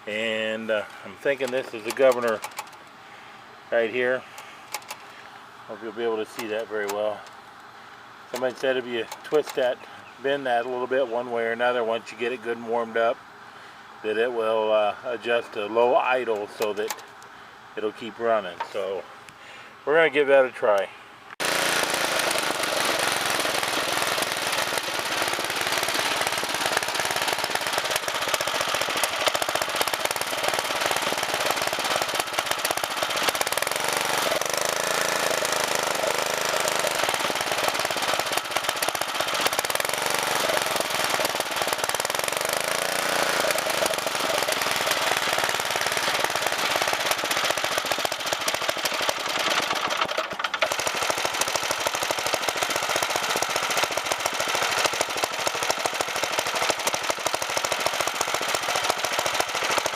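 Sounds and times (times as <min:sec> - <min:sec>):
lawn mower engine clattering: 0:00.0 - 0:03.0, 0:03.8 - 0:07.7, 0:08.3 - 0:09.8, 0:20.7 - 0:59.9.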